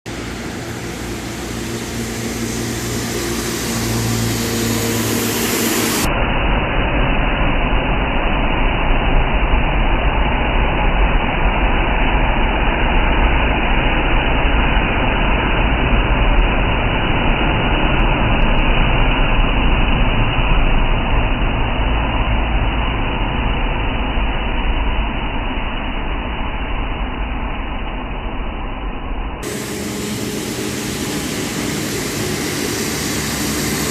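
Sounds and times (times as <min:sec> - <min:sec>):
rain hiss: 0:00.1 - 0:06.1, 0:29.4 - 0:33.9
slowed deep rushing rumble: 0:00.1 - 0:33.9.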